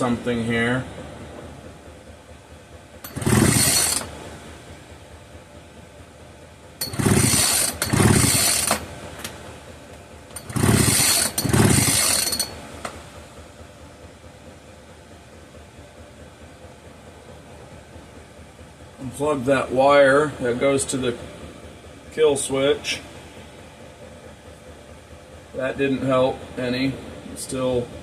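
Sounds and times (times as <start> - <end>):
recoil starter cord pulls: 3.0 - 4.2, 6.8 - 9.4, 10.3 - 13.0
engine turning over: 3.0 - 4.6, 6.8 - 9.6, 10.3 - 13.3.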